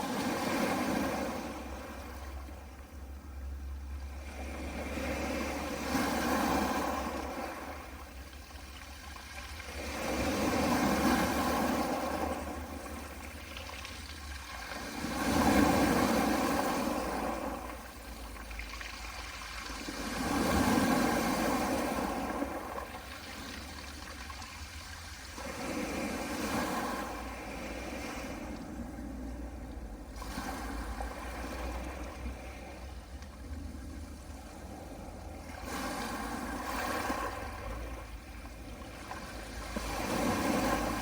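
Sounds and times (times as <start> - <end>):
waves washing onto pebble beach: 4.4 - 8.0, 8.8 - 29.1, 33.6 - 41.0.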